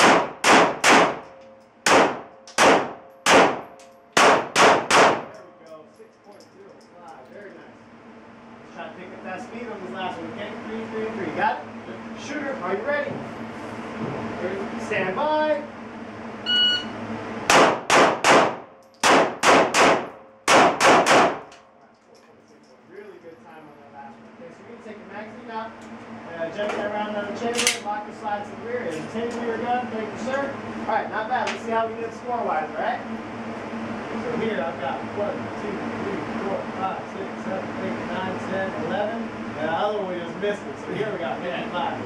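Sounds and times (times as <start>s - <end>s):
handgun shots: 0.0s - 5.4s, 17.5s - 21.6s, 27.6s - 27.8s
shot timer beep: 16.4s - 16.9s.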